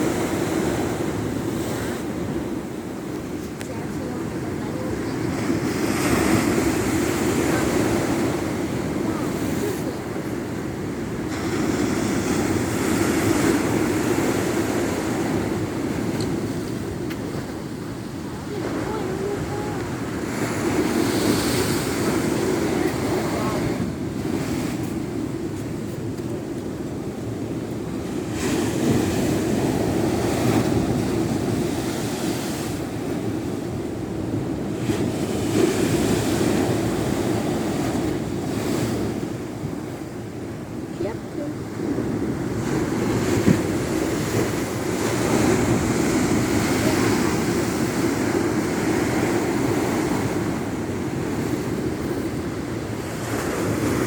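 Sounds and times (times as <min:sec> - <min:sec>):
sea waves washing on shore: 0:00.0 - 0:54.0
wind on microphone: 0:00.0 - 0:54.0.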